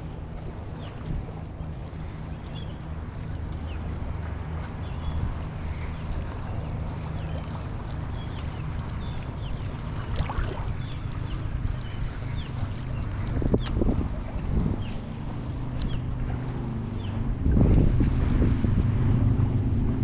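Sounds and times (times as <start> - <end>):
low motor hum: 0.0 - 20.0
wind noise on microphone: 13.1 - 20.0.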